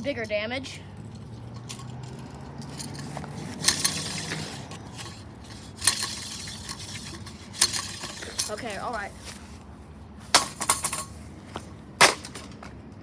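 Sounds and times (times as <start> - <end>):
plastic and glass pieces clinking: 1.1 - 9.5, 10.4 - 11.2.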